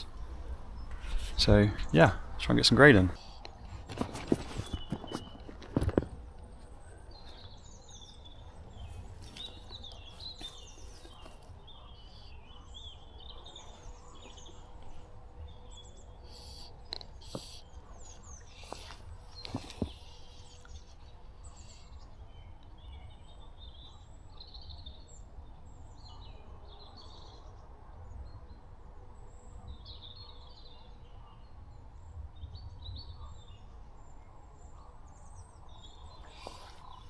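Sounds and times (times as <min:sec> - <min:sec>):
low outdoor rumble: 0:00.0 - 0:03.9
songbirds chirping: 0:00.0 - 0:37.0.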